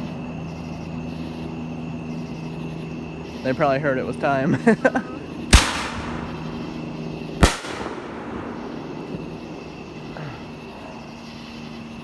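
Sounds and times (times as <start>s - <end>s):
firework bang with echo: 5.5s - 6.6s, 7.4s - 9.3s.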